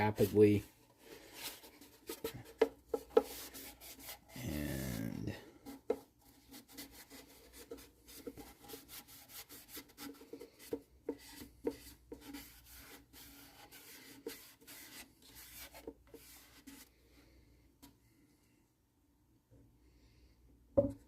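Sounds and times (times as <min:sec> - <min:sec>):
paper towel rubbing on wood: 0:00.0 - 0:00.6, 0:03.1 - 0:05.8, 0:06.4 - 0:16.9.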